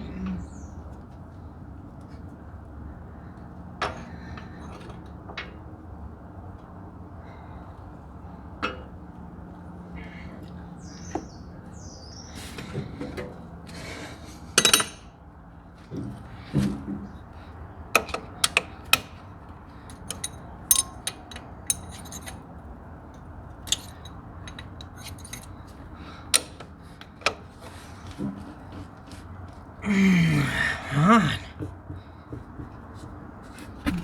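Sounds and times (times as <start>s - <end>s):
hand tools clinking on metal: 19.9s - 22.5s, 23.6s - 25.8s.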